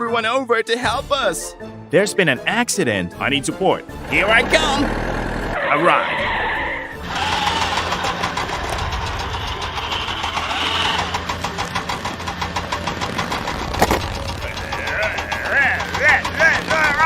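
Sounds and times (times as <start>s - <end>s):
engine running with knocking: 4.0s - 5.6s, 7.0s - 17.0s.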